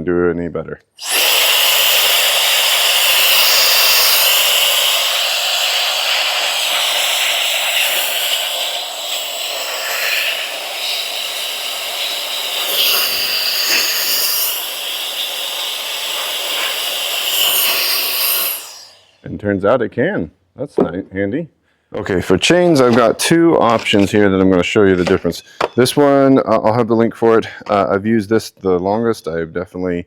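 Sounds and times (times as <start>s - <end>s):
electric air blower whining: 1.0s - 19.2s.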